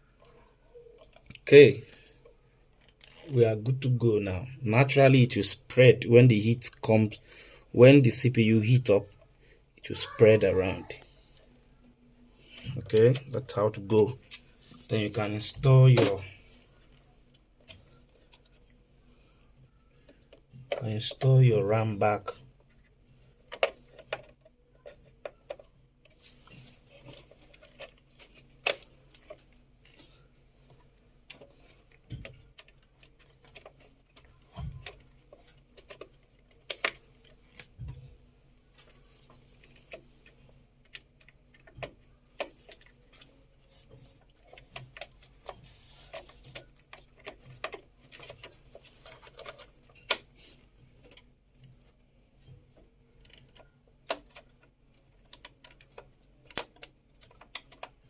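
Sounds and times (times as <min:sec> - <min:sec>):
plastic clicks: 0:23.4 - 0:38.1, 0:38.7 - 0:58.0.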